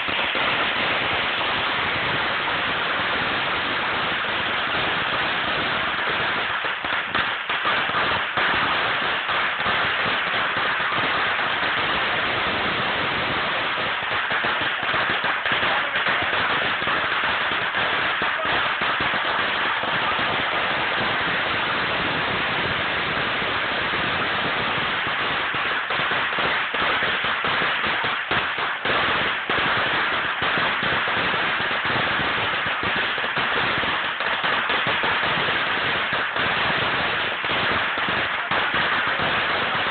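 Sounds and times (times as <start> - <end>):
firecrackers crackling: 0.0 - 39.9.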